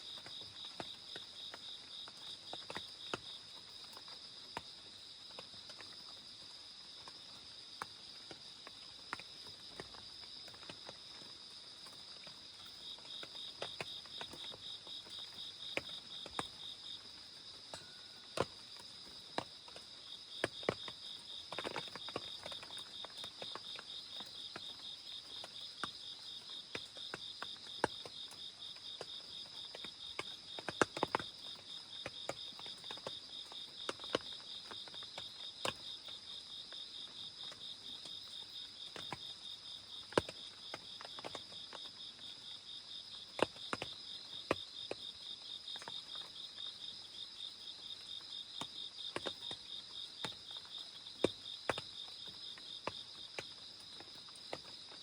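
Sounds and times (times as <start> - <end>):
raindrops tapping: 48.6 - 54.9.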